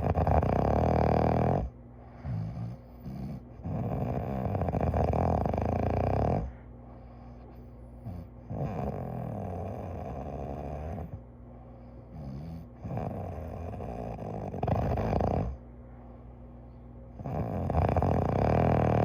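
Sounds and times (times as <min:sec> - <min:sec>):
steady low hum: 0:00.0 - 0:19.0
person snoring: 0:17.2 - 0:19.0.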